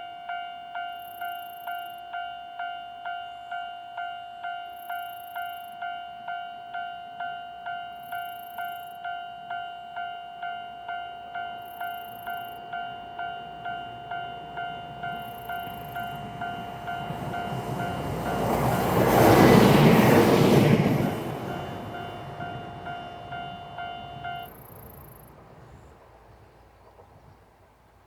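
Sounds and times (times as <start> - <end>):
level crossing alarm ringing: 0.0 - 25.2
diesel railcar rumbling: 11.3 - 28.0.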